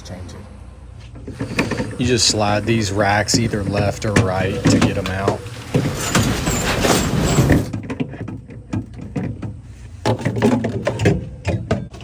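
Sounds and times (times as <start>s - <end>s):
refrigerator racks sliding and rattling: 1.3s - 8.0s.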